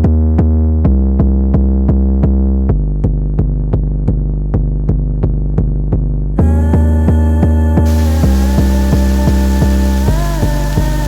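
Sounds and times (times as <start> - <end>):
drum machine beat: 7.9 - 11.0
heavy sustained bass line: 7.9 - 11.0.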